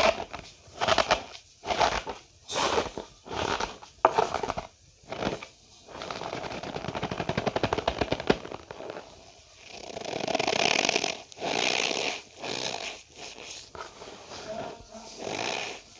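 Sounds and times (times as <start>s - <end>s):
cornstarch squeaky crunching: 0.0s - 9.1s.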